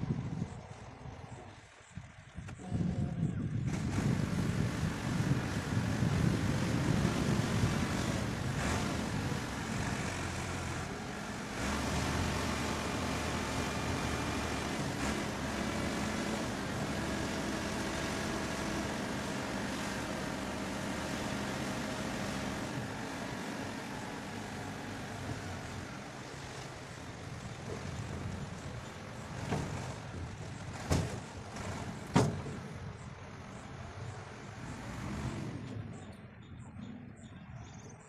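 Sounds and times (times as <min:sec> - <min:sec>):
wind buffeting microphone: 0:00.0 - 0:24.0
diesel engine running: 0:00.0 - 0:36.7.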